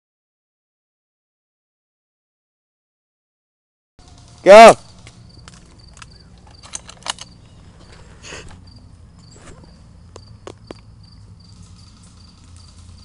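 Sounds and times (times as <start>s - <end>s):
faint high insect chirping: 4.8s - 13.0s.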